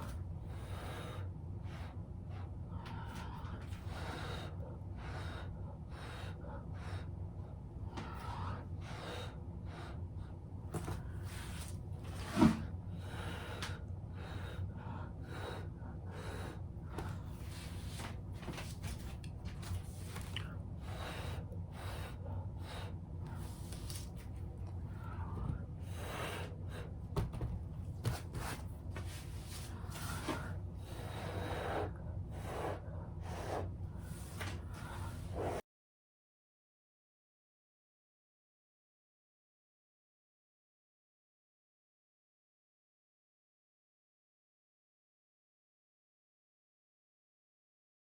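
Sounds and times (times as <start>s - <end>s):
low steady hum: 0.0s - 35.6s
puffs of breath: 28.4s - 35.6s.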